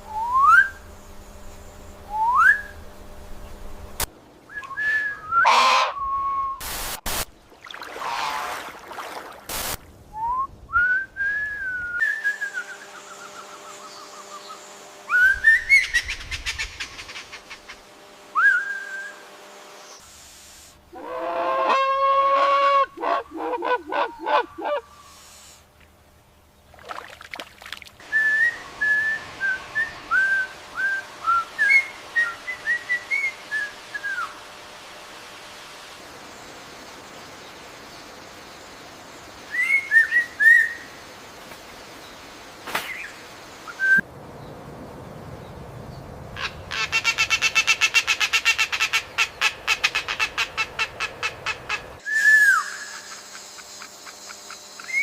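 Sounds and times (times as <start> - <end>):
background hiss: 0.0 - 55.0
bird downslurred whistles: 4.5 - 6.6, 10.2 - 16.0, 18.4 - 19.2, 28.1 - 34.4, 39.5 - 40.8, 43.7 - 44.0, 52.0 - 53.0
harsh bird chattering: 46.4 - 51.8.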